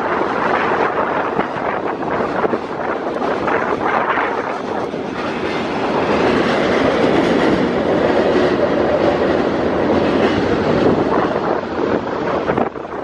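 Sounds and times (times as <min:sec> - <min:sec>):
train wheels rumbling on rail: 0:00.0 - 0:13.0.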